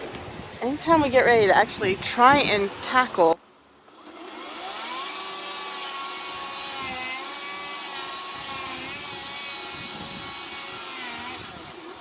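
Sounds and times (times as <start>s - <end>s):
chainsaw running at high revs: 3.9s - 12.0s.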